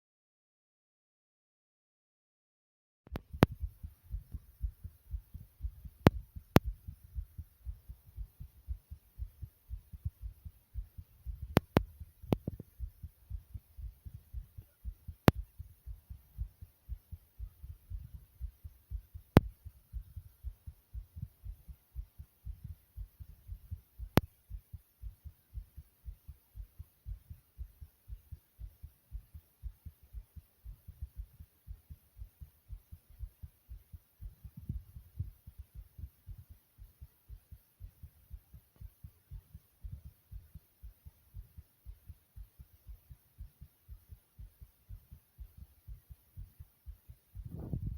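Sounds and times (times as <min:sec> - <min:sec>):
fast heartbeat thuds: 0:03.1 - 0:47.9
sharp clicks: 0:11.4 - 0:12.8.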